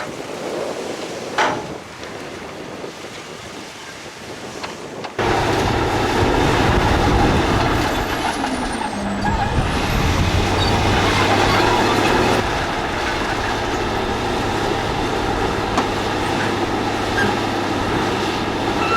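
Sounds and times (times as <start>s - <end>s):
outdoor noise: 3.1s - 18.9s
heavy machinery diesel engines: 5.2s - 18.9s.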